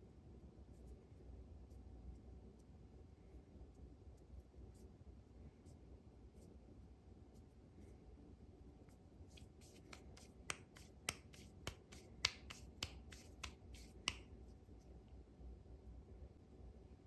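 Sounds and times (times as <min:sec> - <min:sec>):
low steady hum: 0:00.0 - 0:17.0
light sharp clicks and taps: 0:08.9 - 0:15.2.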